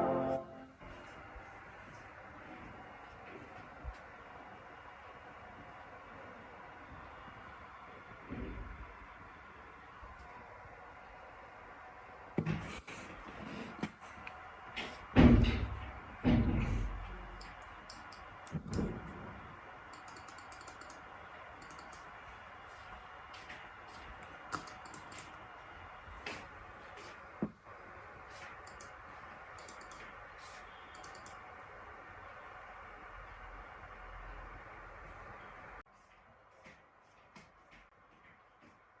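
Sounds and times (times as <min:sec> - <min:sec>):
light clicks and taps: 0:17.4 - 0:19.0, 0:19.9 - 0:22.1, 0:22.8 - 0:25.4, 0:28.3 - 0:29.0, 0:29.6 - 0:31.4.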